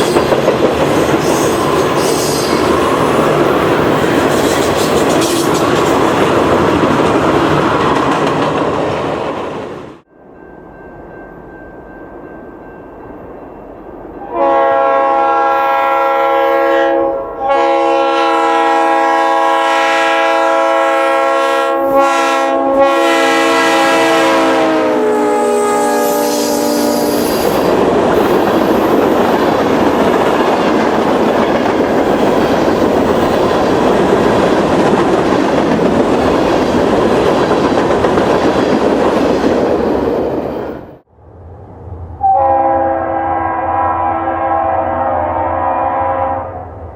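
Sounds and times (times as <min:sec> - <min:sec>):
locomotive air horn blasts: 0:14.2 - 0:27.4, 0:42.2 - 0:46.7.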